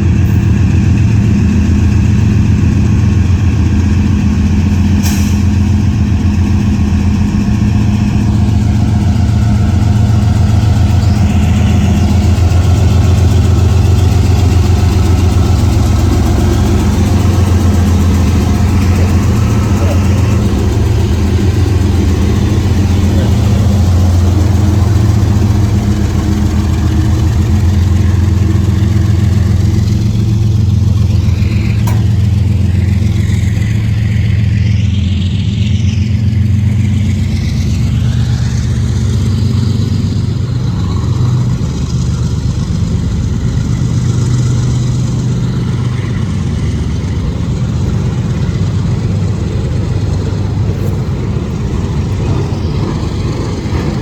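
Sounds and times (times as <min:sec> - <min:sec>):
diesel locomotive engine drone: 0:00.0 - 0:54.0.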